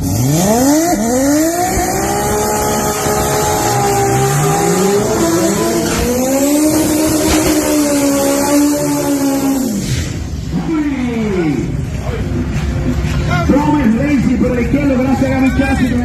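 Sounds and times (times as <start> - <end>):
car engine revving hard: 0.0 - 10.4.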